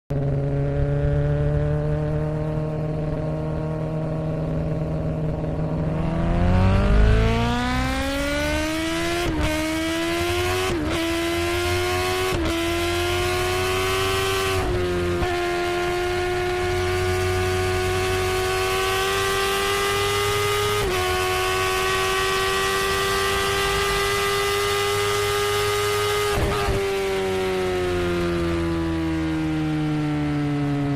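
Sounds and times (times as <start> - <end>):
motorcycle engine revving: 0.1 - 30.9.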